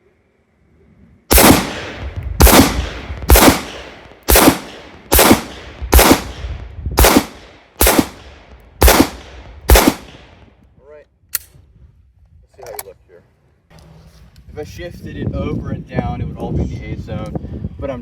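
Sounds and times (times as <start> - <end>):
handgun shots with echo: 1.3 - 6.4, 7.0 - 10.3.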